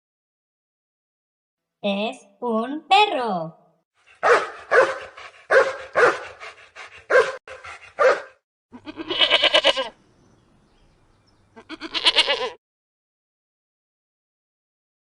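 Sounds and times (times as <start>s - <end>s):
dog barking: 4.2s - 8.4s
goat bleating: 8.7s - 10.0s, 11.5s - 12.6s.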